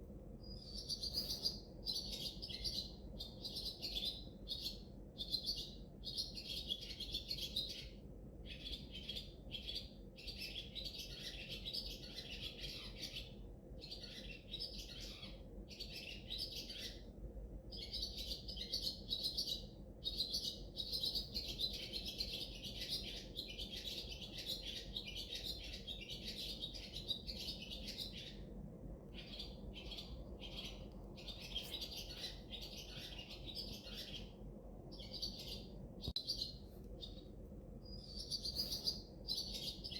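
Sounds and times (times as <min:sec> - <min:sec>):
small birds chirping: 0:00.4 - 0:39.9.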